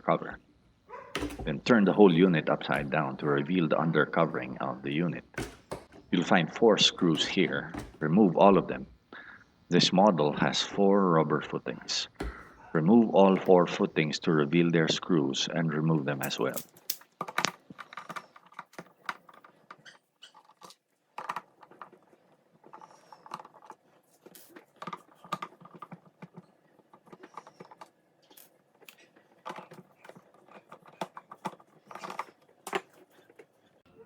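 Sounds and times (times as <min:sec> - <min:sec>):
hand tools clicking on plastic: 0:16.2 - 0:33.9.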